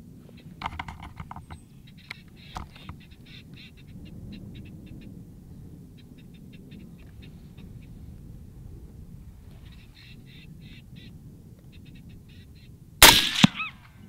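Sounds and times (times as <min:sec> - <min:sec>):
steady low rumble: 0:00.0 - 0:14.0
short high bird-like calls: 0:13.4 - 0:14.0.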